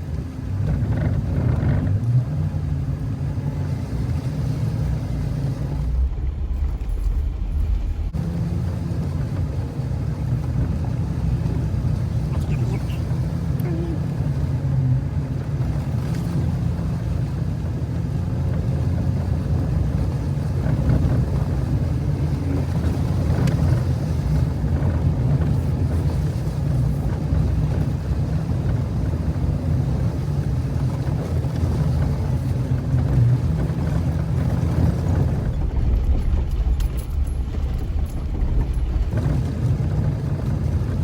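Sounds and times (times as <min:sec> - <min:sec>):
low engine and road drone: 0:00.0 - 0:41.0
wind noise: 0:19.2 - 0:41.0.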